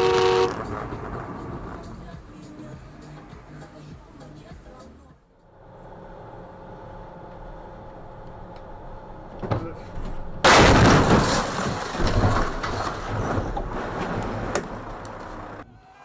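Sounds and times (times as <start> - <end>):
car crash: 10.4 - 15.6.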